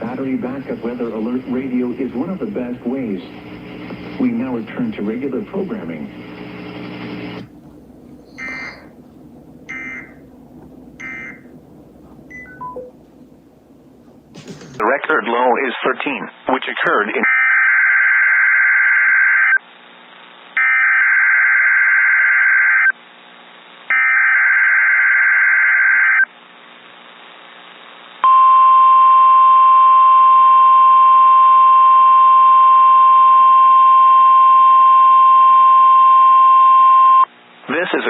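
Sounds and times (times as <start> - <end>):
steady warning alarm tone: 8.2 - 9.0, 9.7 - 10.2, 11.0 - 11.6
warbling two-tone data bursts: 8.3 - 8.9.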